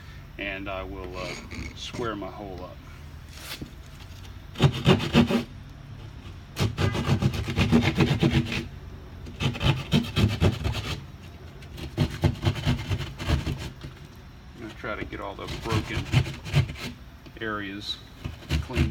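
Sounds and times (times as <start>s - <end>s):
hand saw cutting drywall: 4.6s - 5.5s, 6.6s - 8.7s, 9.3s - 11.0s, 11.7s - 13.8s, 14.7s - 17.0s, 18.2s - 18.9s.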